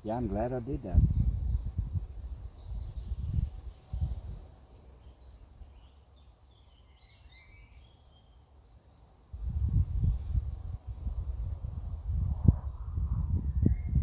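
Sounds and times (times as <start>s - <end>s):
small bird chirping: 1.0s - 9.2s.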